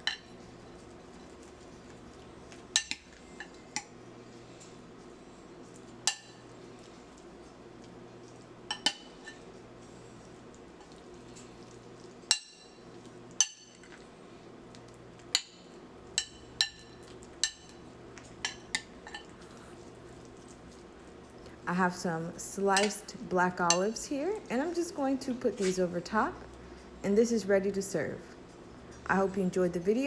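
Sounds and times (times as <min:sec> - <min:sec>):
metal utensil clinking on cookware: 0:22.8 - 0:23.0.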